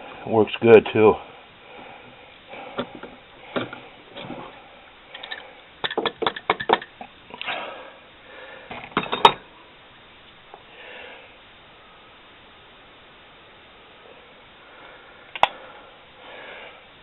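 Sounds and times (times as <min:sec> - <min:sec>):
handling clicks and knocks: 0:05.1 - 0:07.1.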